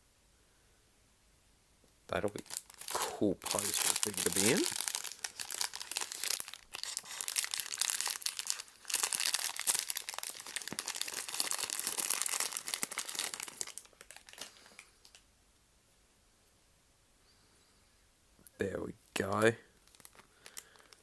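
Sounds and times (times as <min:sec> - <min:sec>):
packaging crinkling and tearing: 0:02.2 - 0:15.2, 0:19.3 - 0:21.0.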